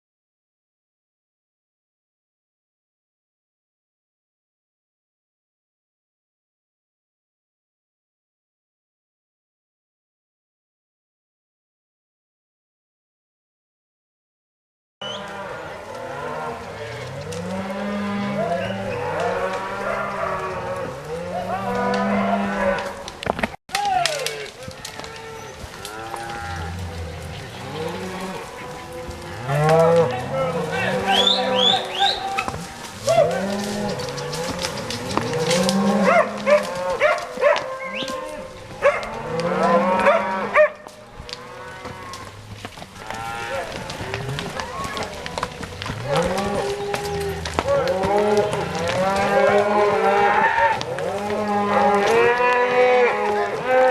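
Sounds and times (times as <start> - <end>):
herd of cows mooing: 15.0 - 23.0, 24.2 - 53.9.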